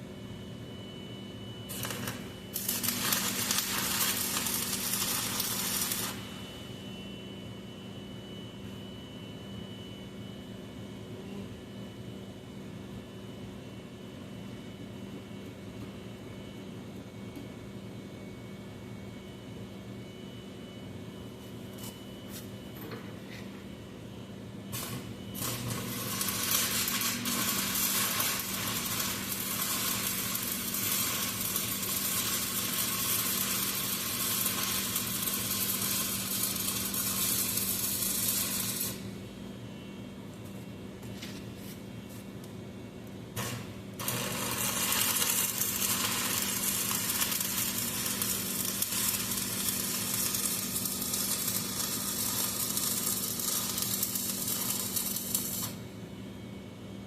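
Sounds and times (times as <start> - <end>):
steady low hum: 0.0 - 57.0
welder crackling sizzle: 1.7 - 6.5, 24.7 - 39.1, 43.4 - 55.9.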